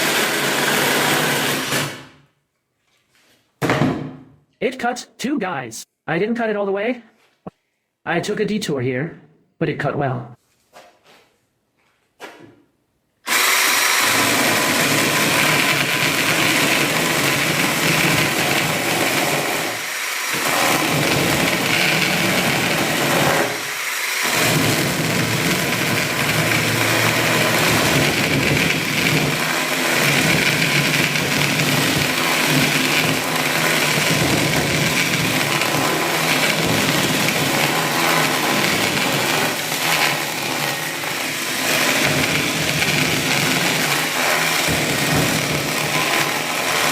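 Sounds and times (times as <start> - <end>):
chainsaw drill cutting wood: 0.0 - 2.2, 13.3 - 46.9.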